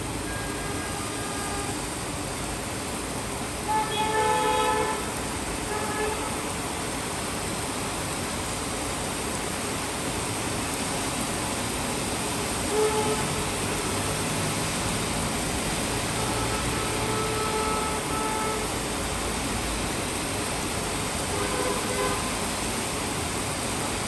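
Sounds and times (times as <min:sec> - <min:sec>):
city traffic: 0:00.0 - 0:24.0
steady rain: 0:00.0 - 0:24.0
vehicle horn toots: 0:00.2 - 0:01.8, 0:03.7 - 0:05.1, 0:05.7 - 0:06.4, 0:12.7 - 0:13.4, 0:16.2 - 0:18.7.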